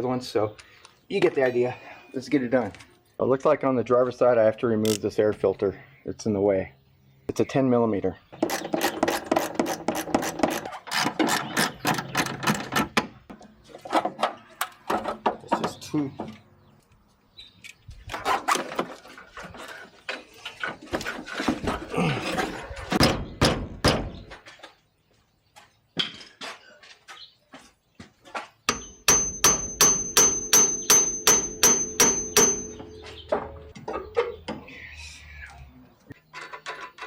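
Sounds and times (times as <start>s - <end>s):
metal strikes with ringing tone: 28.7s - 33.8s
metal hand tools clanking: 28.7s - 34.4s.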